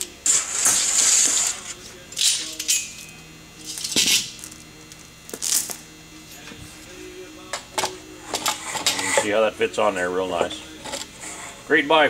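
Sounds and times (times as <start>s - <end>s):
metal clinking and scraping: 0.3s - 4.6s, 7.8s - 9.4s, 10.3s - 11.6s.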